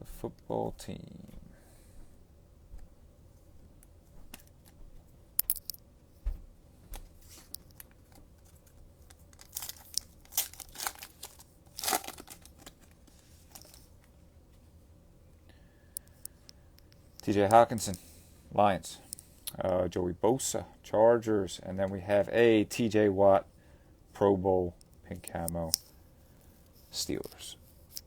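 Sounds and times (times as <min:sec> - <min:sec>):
plastic wrapper crinkling: 0:07.4 - 0:13.9.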